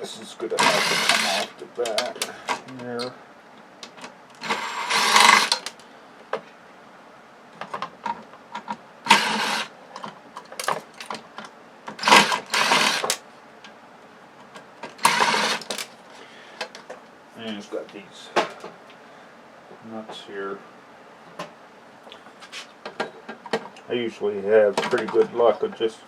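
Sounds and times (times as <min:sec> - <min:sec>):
cordless screw gun spurts: 0:00.6 - 0:01.5, 0:04.4 - 0:05.7, 0:09.1 - 0:09.7, 0:12.0 - 0:13.2, 0:15.0 - 0:15.8.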